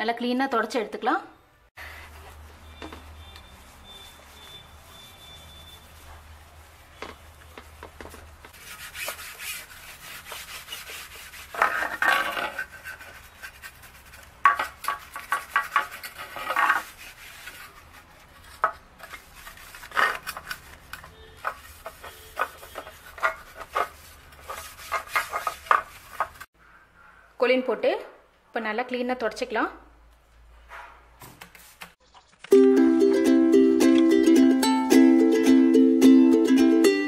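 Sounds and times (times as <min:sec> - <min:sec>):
cloth wiping plastic: 0:01.9 - 0:26.5.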